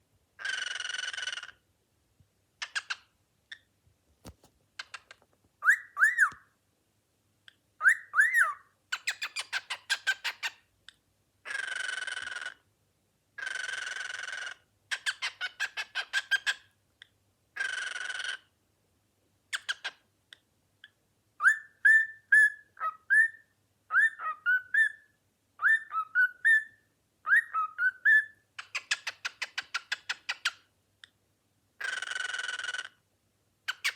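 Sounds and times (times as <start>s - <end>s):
cockatiel calling: 5.6s - 6.4s, 7.8s - 10.6s, 13.4s - 16.6s, 19.5s - 20.0s, 21.4s - 30.6s, 33.7s - 33.9s.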